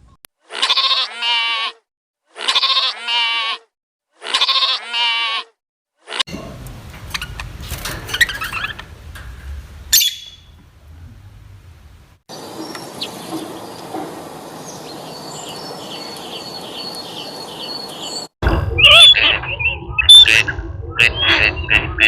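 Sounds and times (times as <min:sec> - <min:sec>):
outdoor background noise: 0:06.0 - 0:22.0
birds chirping: 0:09.8 - 0:10.7, 0:12.3 - 0:20.4.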